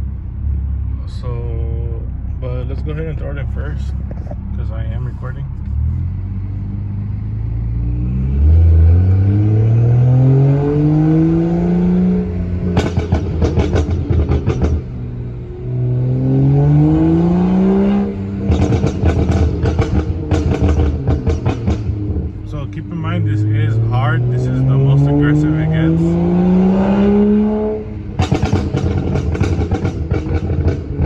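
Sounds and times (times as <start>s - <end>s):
car engine revving: 0.0s - 31.0s
exhaust pops and crackles: 3.0s - 5.0s, 12.7s - 15.1s, 18.4s - 23.0s, 28.2s - 31.0s.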